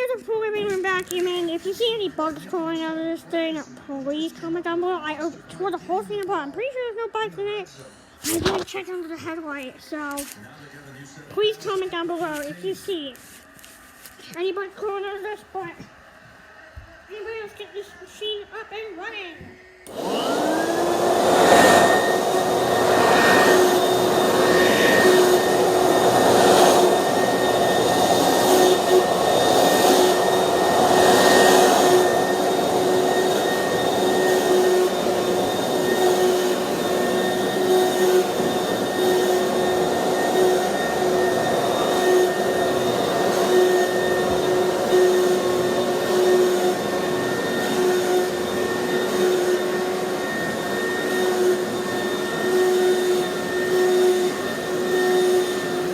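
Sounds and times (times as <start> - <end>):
vacuum cleaner running: 11.2 - 55.9.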